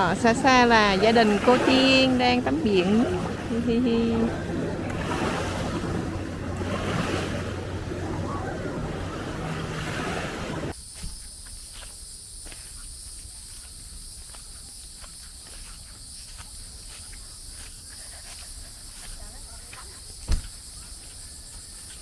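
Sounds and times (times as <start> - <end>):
surf: 0.0 - 10.7
wind: 0.0 - 22.0
high-pitched insect chorus: 10.7 - 22.0.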